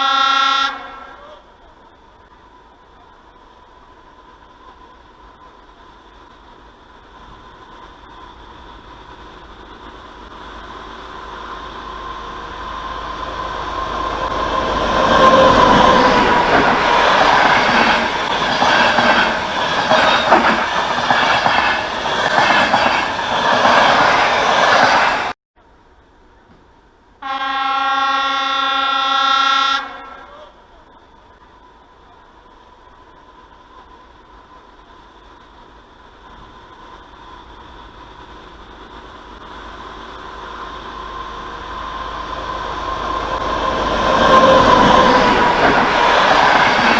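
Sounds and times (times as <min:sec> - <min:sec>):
train horn long blast: 0:00.0 - 0:01.5, 0:27.2 - 0:30.6
train passing with rumble: 0:00.0 - 0:46.9.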